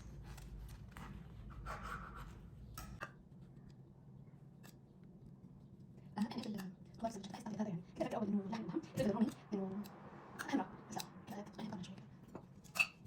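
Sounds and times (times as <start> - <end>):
knife rasping through bread: 0.0 - 2.6.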